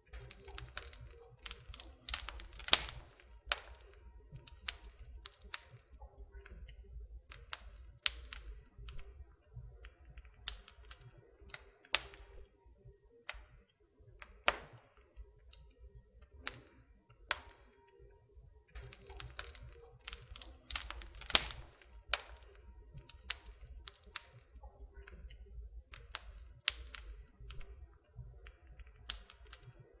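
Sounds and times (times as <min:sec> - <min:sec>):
campfire crackling and popping: 0:00.1 - 0:12.5, 0:18.7 - 0:30.0.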